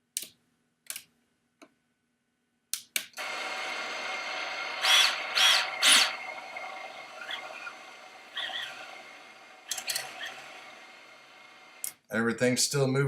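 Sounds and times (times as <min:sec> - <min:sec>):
drone motors whining: 0:03.2 - 0:11.9.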